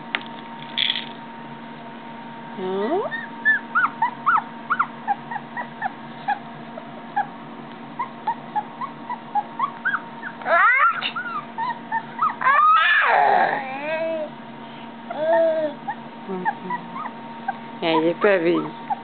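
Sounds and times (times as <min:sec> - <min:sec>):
puppy whimpering: 0:03.0 - 0:07.4, 0:08.0 - 0:14.3, 0:15.0 - 0:19.0.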